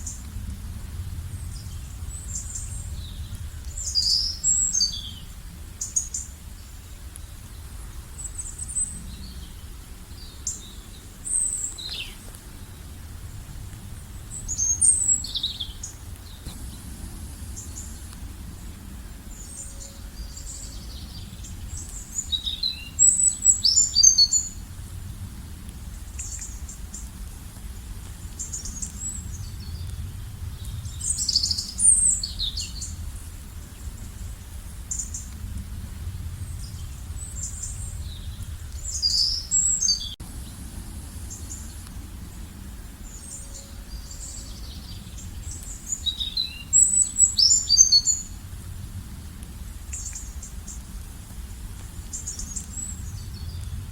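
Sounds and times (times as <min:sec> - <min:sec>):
steady low rumble: 0:00.0 - 0:53.9
birds singing and chirping: 0:01.4 - 0:07.3, 0:08.2 - 0:13.0, 0:14.0 - 0:24.6, 0:28.3 - 0:33.0, 0:36.5 - 0:40.6, 0:42.8 - 0:48.4.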